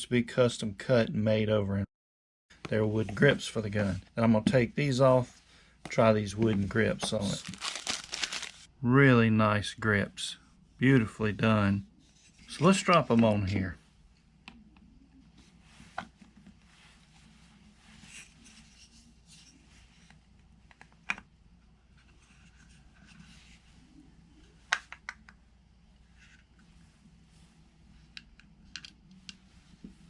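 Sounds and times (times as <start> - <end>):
faint scraping and rubbing: 2.6 - 7.6, 10.3 - 14.1, 15.1 - 20.4, 21.6 - 24.7, 25.9 - 30.0.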